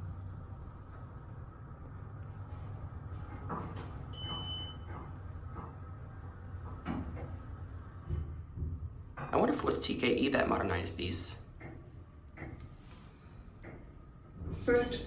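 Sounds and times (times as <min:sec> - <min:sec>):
elevator hum: 0:00.0 - 0:15.0
short electronic beep: 0:04.2 - 0:04.8.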